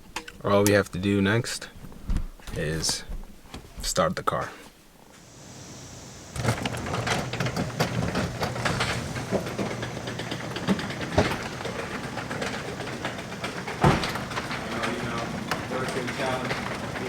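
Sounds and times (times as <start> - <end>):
car engine starting and idling: 5.2 - 17.0.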